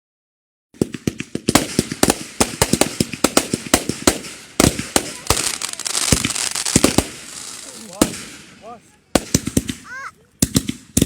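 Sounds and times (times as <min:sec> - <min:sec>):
fireworks banging: 0:00.8 - 0:11.0
fireworks crackling: 0:00.8 - 0:11.0.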